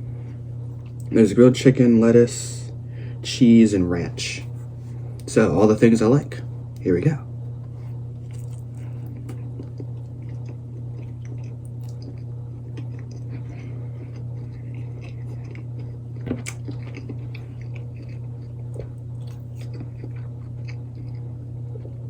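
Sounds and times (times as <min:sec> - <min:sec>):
steady low hum: 0:00.0 - 0:22.0
person chewing food: 0:07.6 - 0:22.0.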